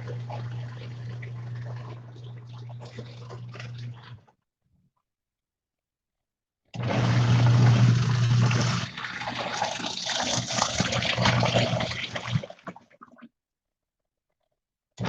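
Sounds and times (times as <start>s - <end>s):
washer motor hum: 0.0s - 4.3s, 6.7s - 12.4s
water sloshing in drum: 0.0s - 4.3s, 8.4s - 13.3s.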